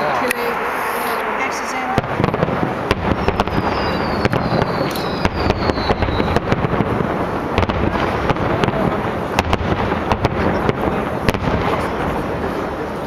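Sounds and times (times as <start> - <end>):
fireworks bangs and crackles: 0.0 - 13.0
descending firework whistle: 0.4 - 8.3
heavy rumble: 0.5 - 13.0.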